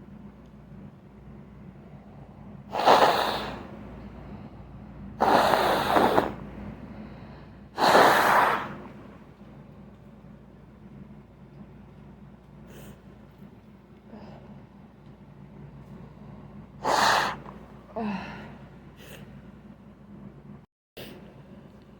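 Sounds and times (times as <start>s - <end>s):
person blowing nose: 2.7s - 3.7s, 5.2s - 6.5s, 7.8s - 8.9s, 16.8s - 17.5s.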